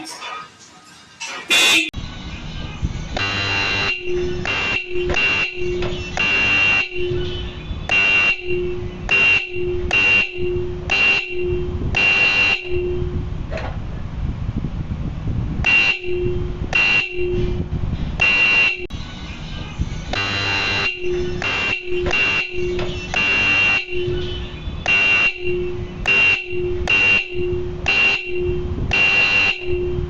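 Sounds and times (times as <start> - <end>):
two-tone bike horn blasts: 1.5 - 2.0, 3.2 - 13.2, 15.6 - 17.6, 18.2 - 19.0, 19.6 - 30.0.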